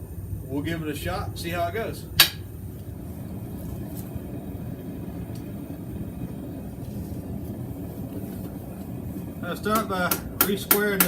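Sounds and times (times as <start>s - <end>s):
low rumble of shop noise: 0.0s - 11.0s
faint clicks: 3.6s - 11.0s.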